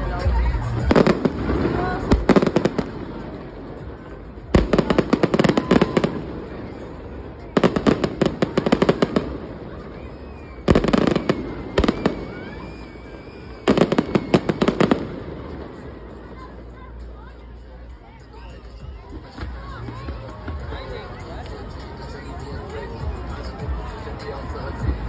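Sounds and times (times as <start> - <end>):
fireworks crackling bangs: 0.9 - 9.9, 10.7 - 16.5.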